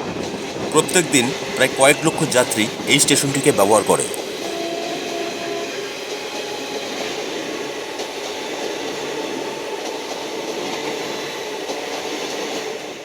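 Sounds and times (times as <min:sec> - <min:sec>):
train rumbling: 0:00.0 - 0:13.0.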